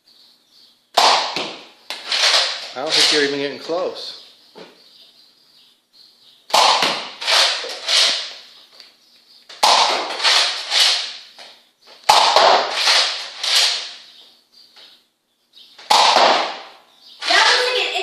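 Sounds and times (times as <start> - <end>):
toy blaster shots: 1.0 - 3.2, 6.5 - 8.4, 9.6 - 11.2, 12.1 - 14.0, 15.8 - 17.8.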